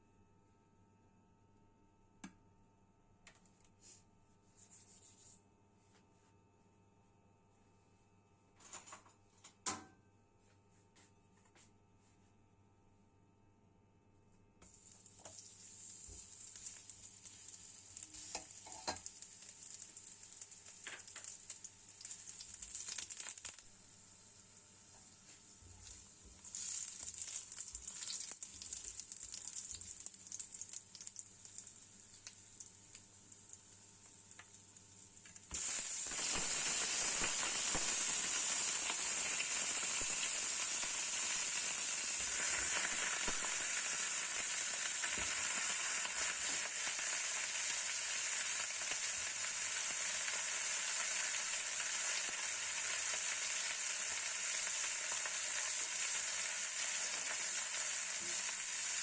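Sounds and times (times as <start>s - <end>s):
food frying in oil: 14.6s - 59.0s
oil popping: 18.3s - 23.6s.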